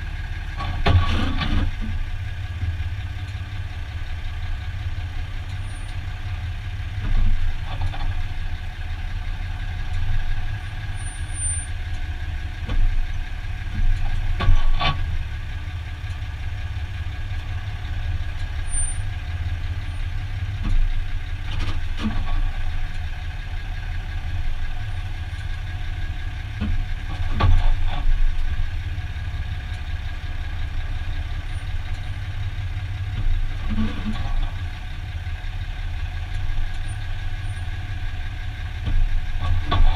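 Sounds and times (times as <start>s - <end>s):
pickup engine running low: 0.0s - 39.9s
drivetrain clunk: 0.6s - 2.0s, 12.6s - 15.4s, 26.5s - 28.8s, 38.8s - 39.9s.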